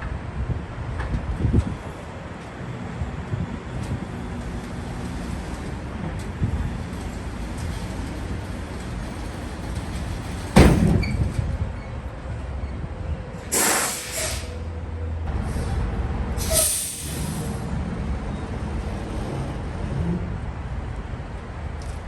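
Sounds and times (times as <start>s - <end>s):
air brake hisses: 13.5s - 14.6s, 16.4s - 17.6s.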